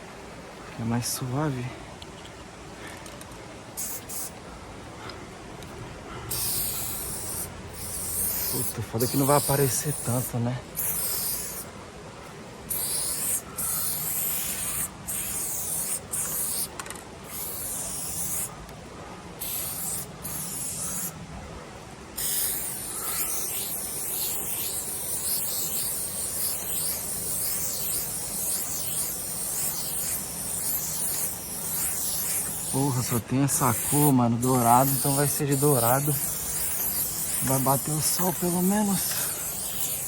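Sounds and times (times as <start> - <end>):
aerosol spray can hissing: 3.8 - 4.4, 6.3 - 11.7, 12.7 - 18.5, 19.4 - 21.2, 22.2 - 40.0.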